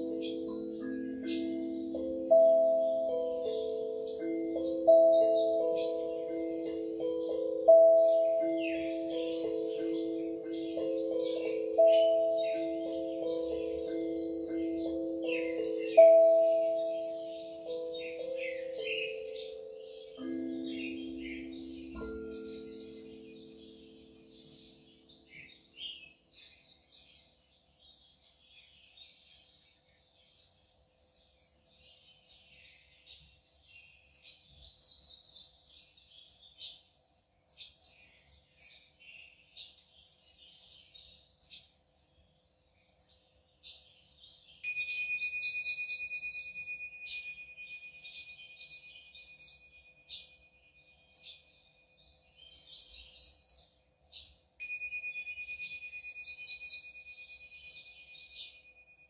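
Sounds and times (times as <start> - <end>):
steady high tone: 0.0 - 25.1
small birds chirping: 0.0 - 59.0.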